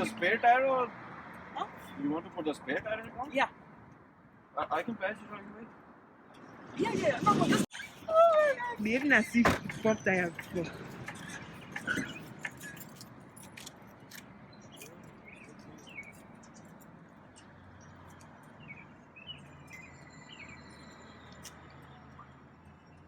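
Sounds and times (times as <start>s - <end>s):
bird chirps: 14.5s - 16.7s, 18.2s - 23.0s.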